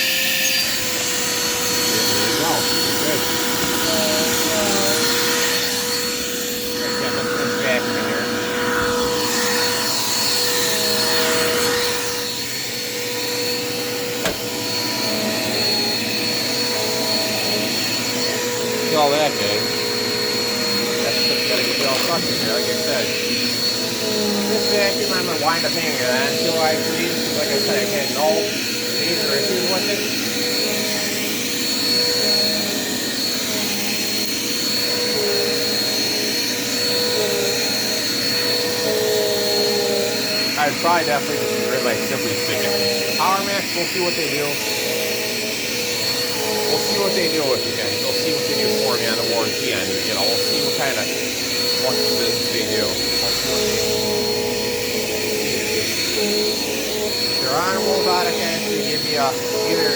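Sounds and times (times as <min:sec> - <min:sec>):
vacuum cleaner running: 0:00.0 - 0:59.9.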